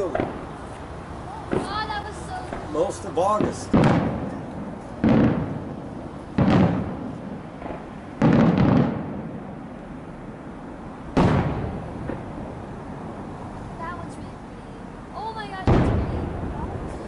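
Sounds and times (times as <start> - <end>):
fireworks shells bursting: 1.5 - 9.7
echoing rumble: 3.3 - 17.0.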